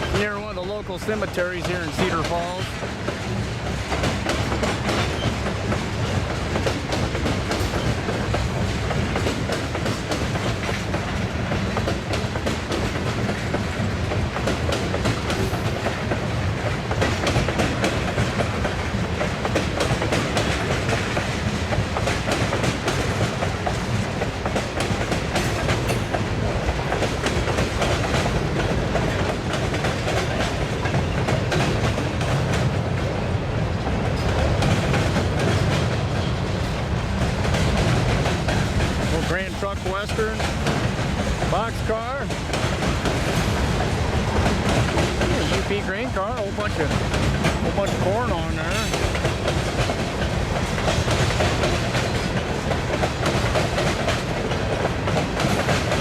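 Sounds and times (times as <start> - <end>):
freight train rumble: 0.0 - 56.0
train wheels clicking over rail joints: 0.0 - 56.0.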